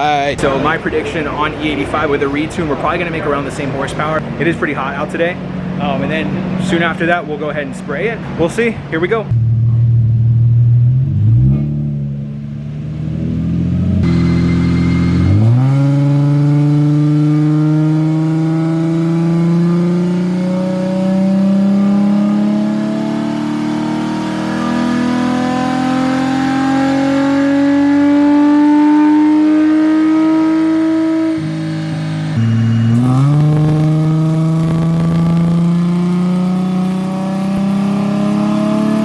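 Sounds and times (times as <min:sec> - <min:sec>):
car engine revving on dyno: 0:09.3 - 0:39.0.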